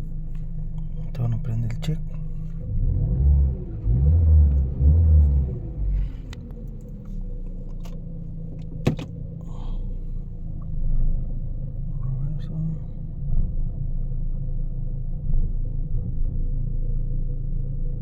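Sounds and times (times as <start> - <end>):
car engine idling with misfire: 3.6 - 18.0.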